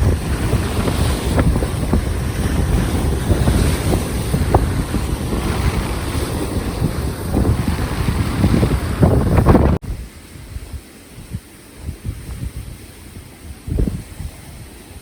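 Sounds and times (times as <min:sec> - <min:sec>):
sea wash: 0:00.0 - 0:15.0
wind buffeting microphone: 0:00.0 - 0:15.0.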